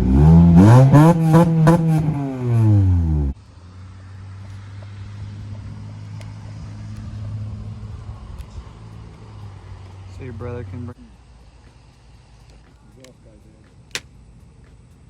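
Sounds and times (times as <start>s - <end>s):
car engine revving: 0.0s - 11.0s
car engine low idle: 1.1s - 15.0s.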